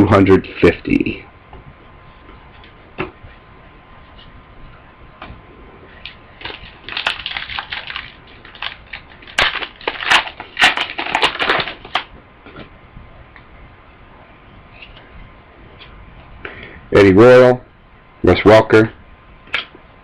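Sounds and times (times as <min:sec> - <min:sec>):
foil wrapper tearing and crinkling: 0:06.0 - 0:12.1.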